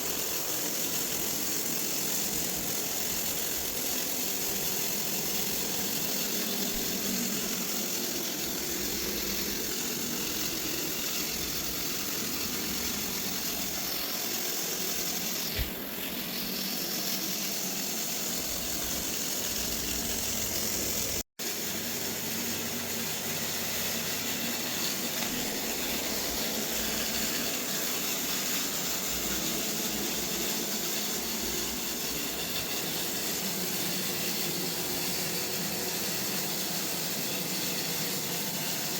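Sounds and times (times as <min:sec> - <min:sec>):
robot vacuum whirring: 0:00.0 - 0:38.9.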